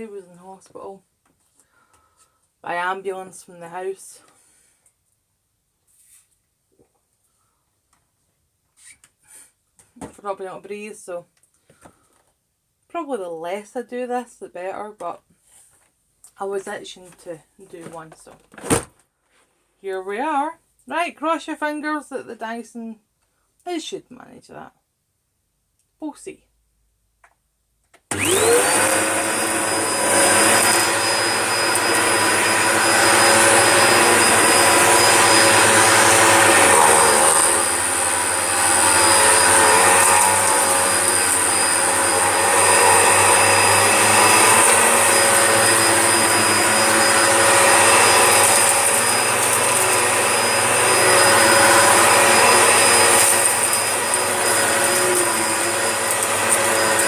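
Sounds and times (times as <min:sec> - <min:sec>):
vacuum cleaner motor whining: 0:28.1 - 0:57.0.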